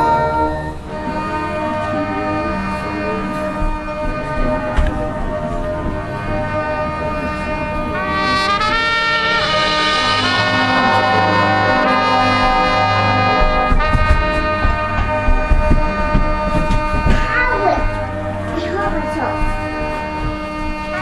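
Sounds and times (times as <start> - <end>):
brass band playing held chords: 0.0 - 21.0
drum and percussion hits: 8.4 - 21.0.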